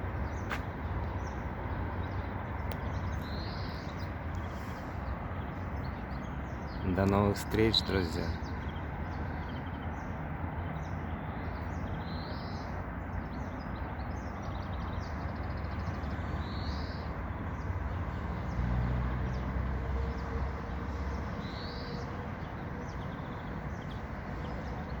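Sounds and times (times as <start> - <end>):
songbirds chirping and singing: 0.0 - 25.0.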